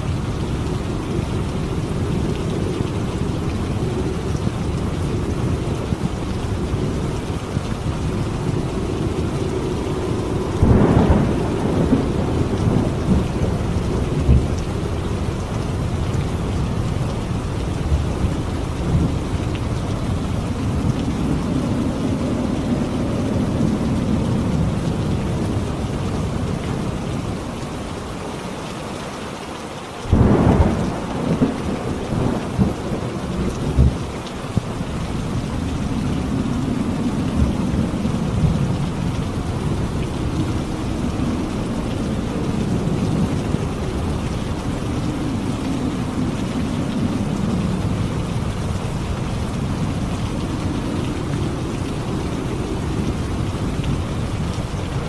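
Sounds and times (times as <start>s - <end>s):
thunder rumbling: 0.0s - 27.6s, 30.1s - 55.0s
steady rain: 0.0s - 55.0s.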